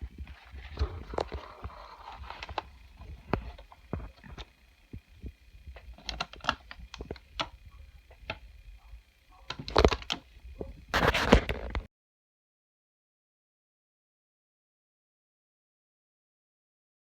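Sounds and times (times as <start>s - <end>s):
plastic clatter: 0.2s - 4.5s, 9.4s - 11.9s
plastic toys clicking and tapping: 5.3s - 8.5s, 9.5s - 10.8s.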